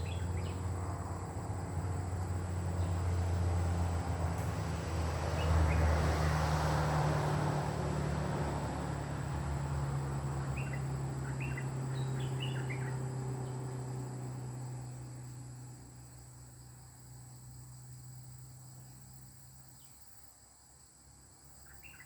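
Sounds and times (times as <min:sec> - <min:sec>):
bird chirpy calls: 0:00.0 - 0:00.6, 0:10.6 - 0:13.0, 0:21.6 - 0:22.0.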